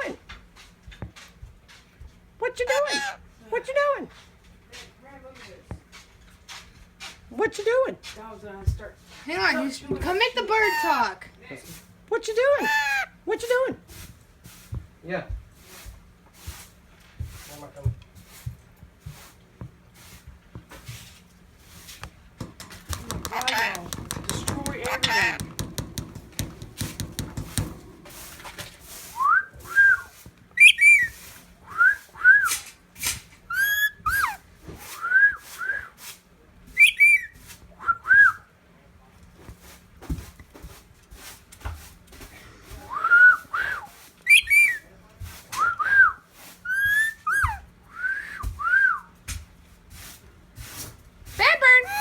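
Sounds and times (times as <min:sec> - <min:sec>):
bird whistling: 0:29.2 - 0:32.6, 0:33.5 - 0:34.4, 0:36.8 - 0:38.4, 0:43.0 - 0:44.8, 0:45.6 - 0:49.0.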